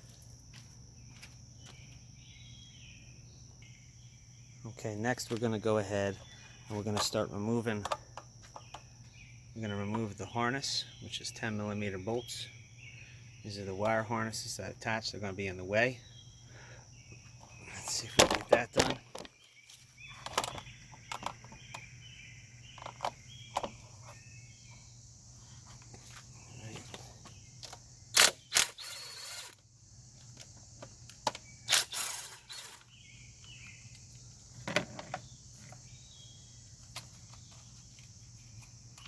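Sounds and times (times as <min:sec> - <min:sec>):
insect-like chirring: 0:16.1 - 0:39.0.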